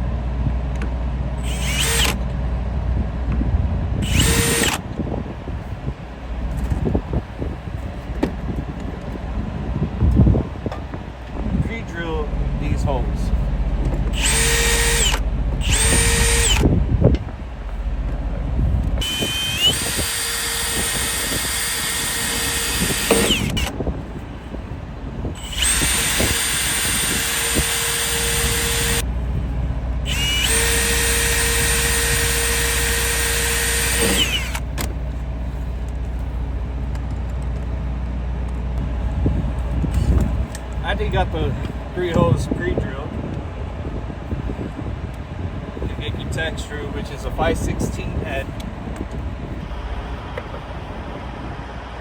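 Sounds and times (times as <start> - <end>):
low rumble: 0.0 - 33.1, 33.8 - 52.0
power drill drilling into metal: 1.4 - 2.2, 4.0 - 4.8, 14.1 - 16.7, 19.0 - 23.7, 25.4 - 29.0, 30.1 - 34.9.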